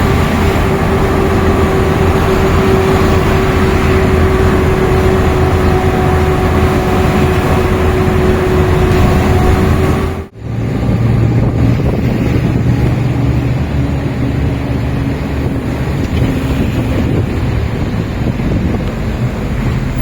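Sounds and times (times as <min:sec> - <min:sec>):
low hum: 0:00.0 - 0:20.0
vehicle engine running: 0:00.0 - 0:20.0
wind noise on microphone: 0:00.0 - 0:20.0.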